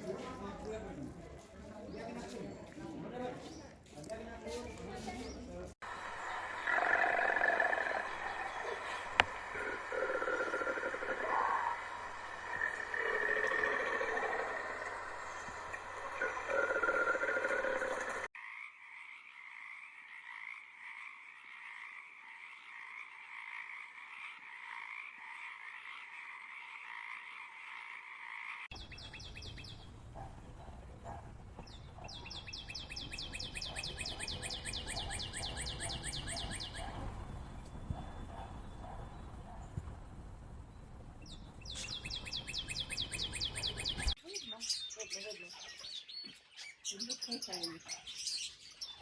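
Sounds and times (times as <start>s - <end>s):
animal calls chorus: 5.8s - 18.3s
rapid pulsed trills: 5.8s - 18.3s.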